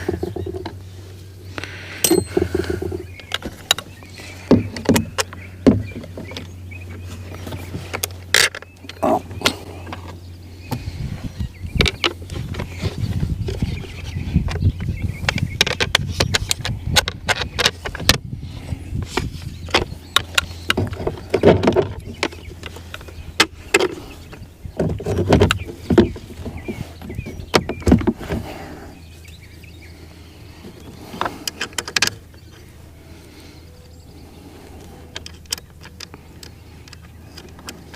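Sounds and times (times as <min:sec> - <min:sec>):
low steady hum: 0:00.0 - 0:37.9
clatter of parts and hand tools: 0:02.0 - 0:06.5.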